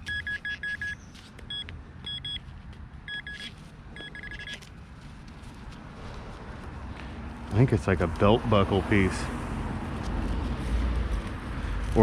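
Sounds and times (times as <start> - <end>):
pinpointer short beeps: 0.0 - 2.4, 3.1 - 4.6.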